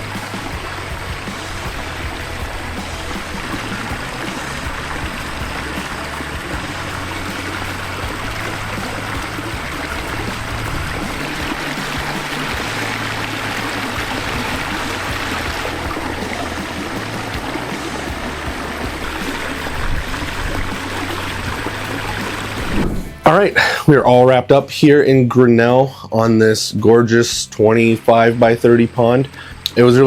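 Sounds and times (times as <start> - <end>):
water rushing over rocks: 0.0 - 23.8.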